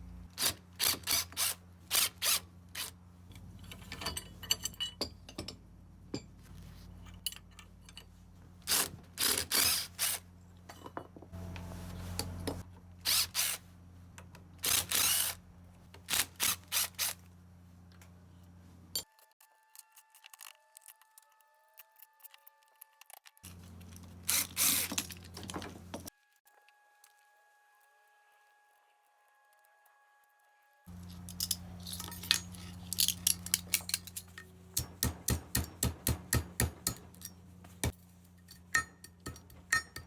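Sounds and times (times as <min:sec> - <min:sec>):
steady low hum: 0:00.0 - 0:00.4
hand tools clicking and rattling: 0:30.9 - 0:40.0.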